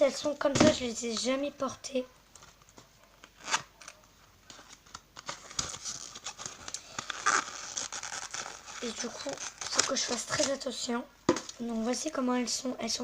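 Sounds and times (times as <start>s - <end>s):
packaging crinkling and ticking: 2.3s - 10.7s.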